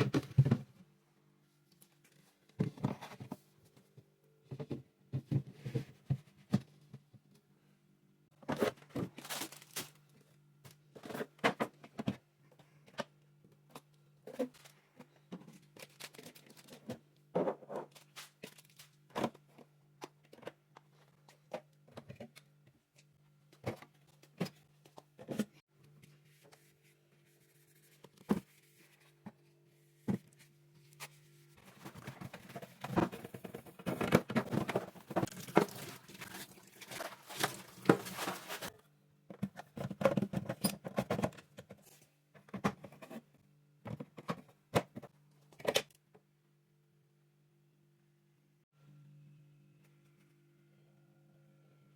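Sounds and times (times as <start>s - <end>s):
fridge hum: 28.1s - 46.2s
containers and shelves clicking: 31.7s - 38.7s.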